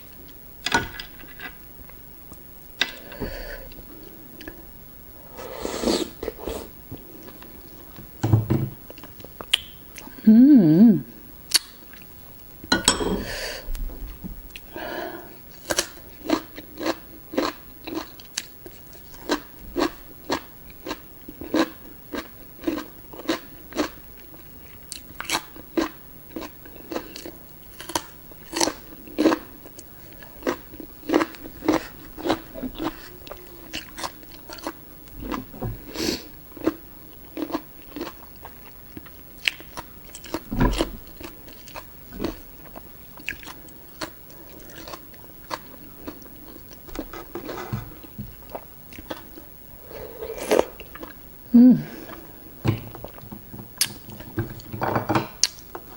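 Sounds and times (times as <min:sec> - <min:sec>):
person chewing food: 0:15.5 - 0:51.2, 0:52.1 - 0:54.0.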